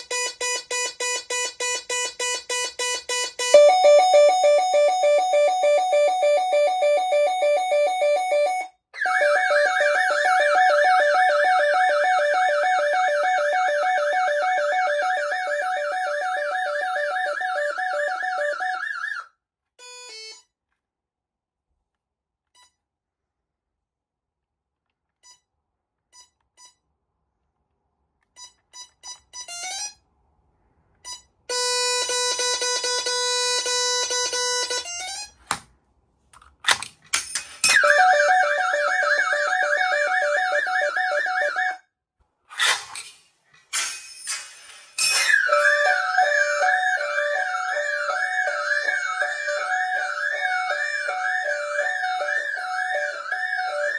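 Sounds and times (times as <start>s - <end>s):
keypad beeps: 0.0s - 8.7s
warbling alarm siren: 0.1s - 19.3s, 37.6s - 41.8s, 45.1s - 53.9s.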